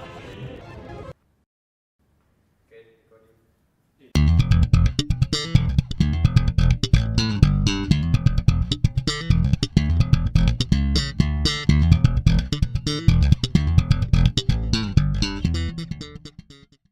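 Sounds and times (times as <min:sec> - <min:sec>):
guitar: 0:04.2 - 0:16.8
plucked bass guitar line: 0:04.2 - 0:16.9.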